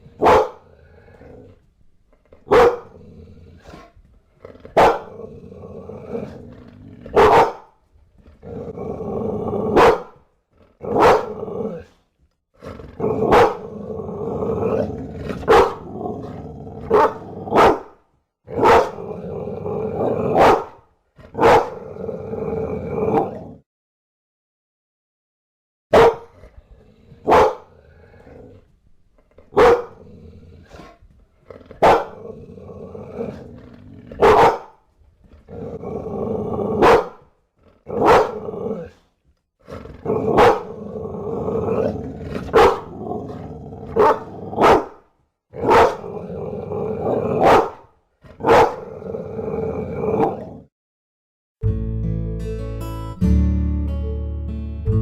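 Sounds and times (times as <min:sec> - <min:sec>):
dog growling: 0:00.0 - 0:07.5, 0:08.1 - 0:12.0, 0:12.6 - 0:17.9, 0:18.5 - 0:20.6, 0:21.2 - 0:23.6, 0:26.3 - 0:45.0, 0:45.6 - 0:50.7
dog barking sharply: 0:00.2 - 0:00.6, 0:02.5 - 0:02.9, 0:04.8 - 0:05.1, 0:07.2 - 0:07.7, 0:09.8 - 0:10.2, 0:10.9 - 0:11.4, 0:13.3 - 0:13.6, 0:15.5 - 0:15.9, 0:16.9 - 0:18.0, 0:18.6 - 0:19.0, 0:20.4 - 0:20.8, 0:21.4 - 0:21.8, 0:25.9 - 0:26.3, 0:27.3 - 0:27.7, 0:29.5 - 0:30.0, 0:31.8 - 0:32.2, 0:34.2 - 0:34.8, 0:36.8 - 0:37.2, 0:38.0 - 0:38.4, 0:40.3 - 0:40.7, 0:42.5 - 0:42.9, 0:44.0 - 0:45.0, 0:45.6 - 0:46.1, 0:47.4 - 0:47.8, 0:48.4 - 0:48.8.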